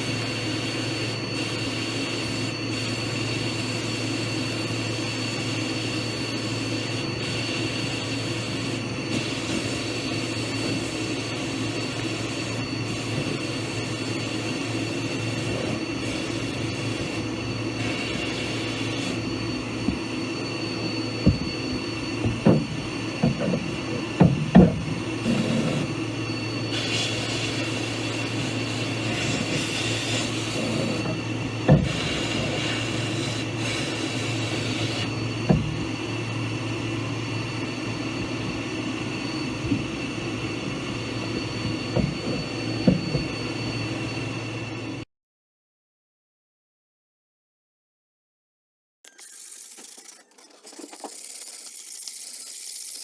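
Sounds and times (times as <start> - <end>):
power tool motor humming: 0.0 - 36.0, 49.1 - 53.0.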